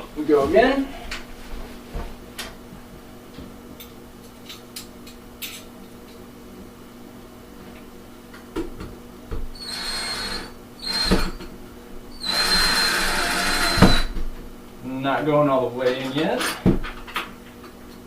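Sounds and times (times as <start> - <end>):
power drill driving screws: 9.6 - 11.4, 12.2 - 14.2.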